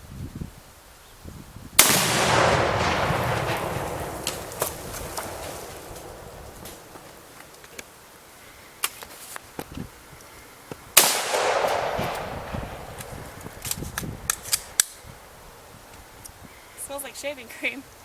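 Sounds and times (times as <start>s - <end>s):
loud explosion blast: 1.8s - 7.2s, 11.0s - 13.6s
sharp cracks: 1.8s - 7.9s, 11.0s - 15.1s.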